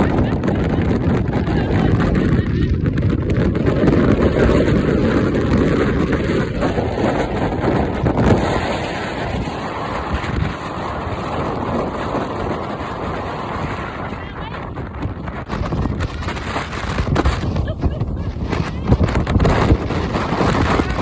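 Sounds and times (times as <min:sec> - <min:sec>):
wind buffeting microphone: 0:00.0 - 0:21.0
surf breaking on shore: 0:15.5 - 0:21.0.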